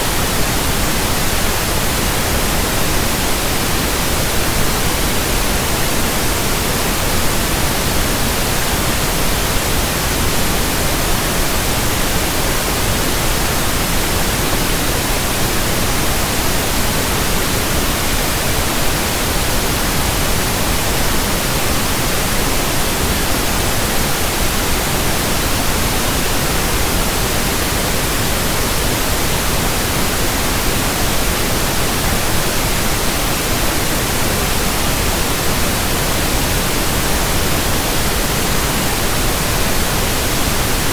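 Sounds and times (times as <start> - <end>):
pink noise hiss: 0.0 - 40.9.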